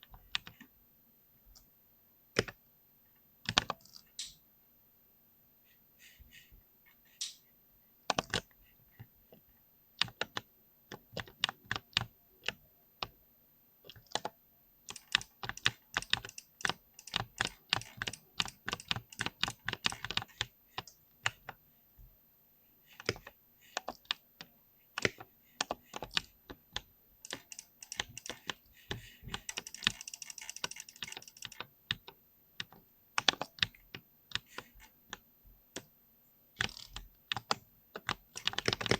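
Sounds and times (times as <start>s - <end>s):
mechanical keyboard typing: 10.0s - 12.6s, 13.9s - 21.5s, 25.0s - 35.0s, 36.6s - 38.9s.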